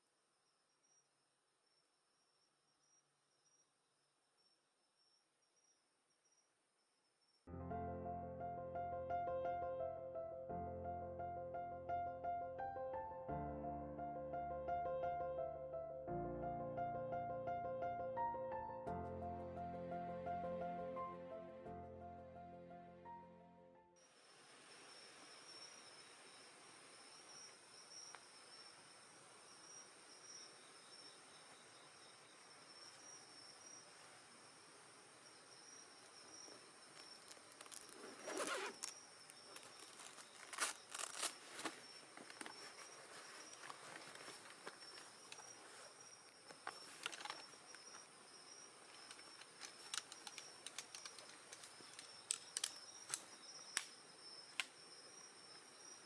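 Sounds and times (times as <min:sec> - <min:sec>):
insects chirring: 0:00.1 - 0:07.5, 0:24.0 - 0:56.0
steady hiss: 0:24.0 - 0:38.0
wood fire crackling and popping: 0:49.0 - 0:53.2.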